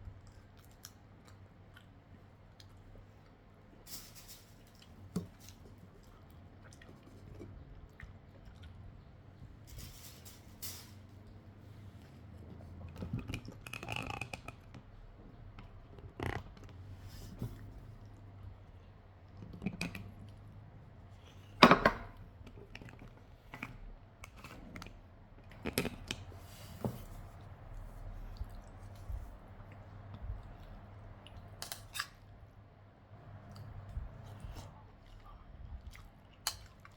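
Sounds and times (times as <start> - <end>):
cutlery knocking on plate: 21.6 - 22.1
person chewing: 33.5 - 36.9.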